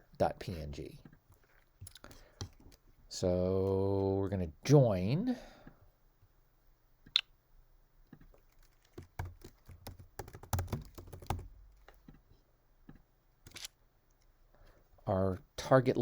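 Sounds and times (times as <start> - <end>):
keyboard key clicks: 8.7 - 11.5.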